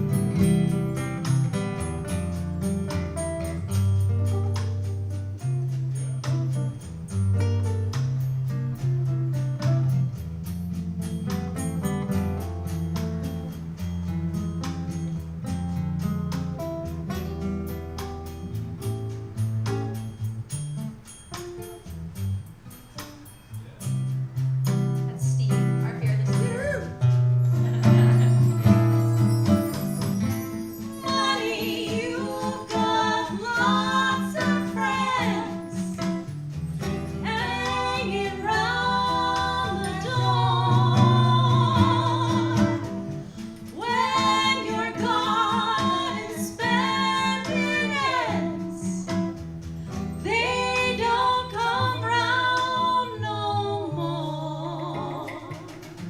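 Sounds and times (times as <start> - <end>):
jazz band playing: 0.0 - 56.0
person singing with vibrato: 30.9 - 36.0, 37.2 - 49.3, 50.2 - 56.0.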